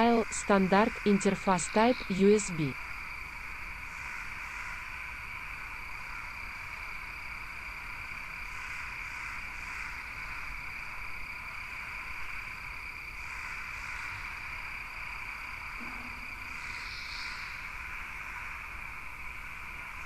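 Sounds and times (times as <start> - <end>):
chirring animal chorus: 0.0 - 2.8.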